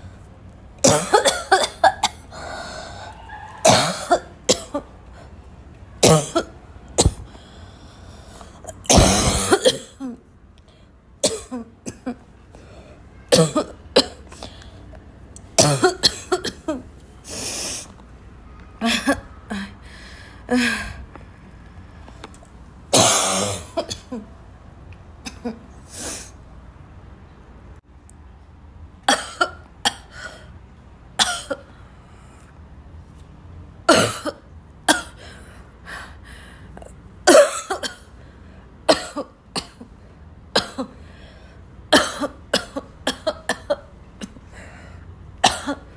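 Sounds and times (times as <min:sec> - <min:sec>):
person coughing harshly: 0:00.8 - 0:02.3, 0:03.1 - 0:04.9, 0:06.0 - 0:07.3, 0:08.7 - 0:10.2, 0:11.2 - 0:12.2, 0:13.2 - 0:14.6, 0:15.6 - 0:16.9, 0:22.9 - 0:24.3, 0:29.1 - 0:30.4, 0:31.2 - 0:31.7, 0:33.9 - 0:35.2, 0:37.3 - 0:38.2, 0:38.9 - 0:39.9, 0:40.6 - 0:41.0, 0:41.9 - 0:44.5, 0:45.4 - 0:45.9.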